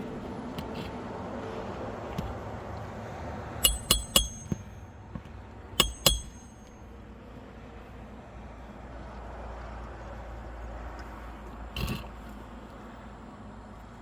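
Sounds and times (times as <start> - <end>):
hammer striking metal nails: 3.6 - 5.2, 5.8 - 6.8.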